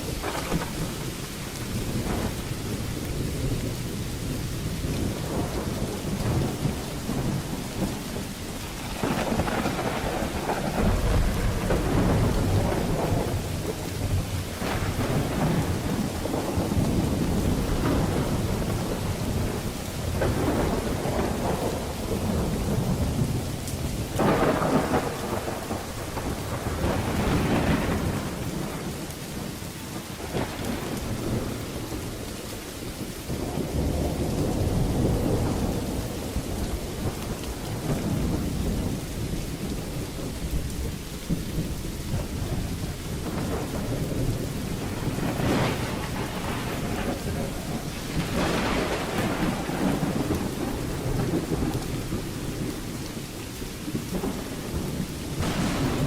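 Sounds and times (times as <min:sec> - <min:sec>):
heavy rain: 0:00.0 - 0:56.0
thunder rumbling: 0:00.0 - 0:56.0.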